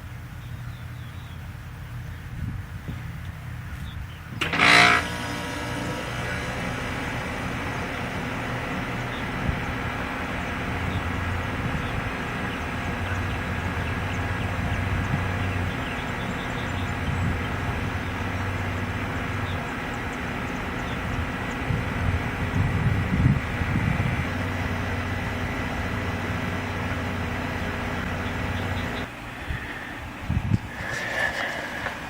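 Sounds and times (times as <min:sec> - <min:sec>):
vehicle engine running: 0:00.0 - 0:32.0
loud screech: 0:04.4 - 0:05.5.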